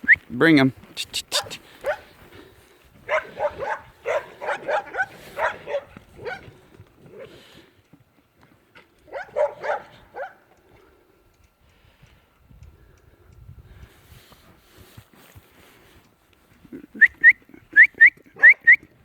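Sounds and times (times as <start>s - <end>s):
young dog barking: 1.2s - 2.1s, 3.0s - 7.3s, 9.1s - 10.4s, 18.4s - 18.7s.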